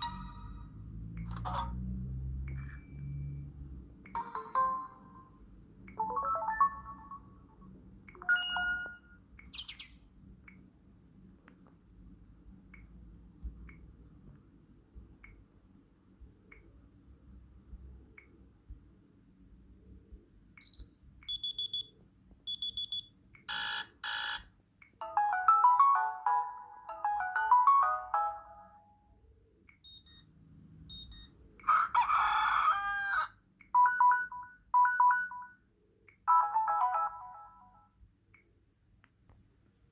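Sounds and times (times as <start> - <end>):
quick ringtone melody: 0.0 - 0.8, 4.2 - 5.4, 6.0 - 7.6, 8.2 - 9.9, 25.0 - 29.0, 33.8 - 35.6, 36.3 - 38.0
phone ringtone beeps and chimes: 0.0 - 5.4, 6.0 - 10.0, 20.6 - 21.9, 22.5 - 24.4, 25.0 - 29.1, 29.8 - 30.3, 30.9 - 31.4, 33.8 - 35.7, 36.3 - 38.0.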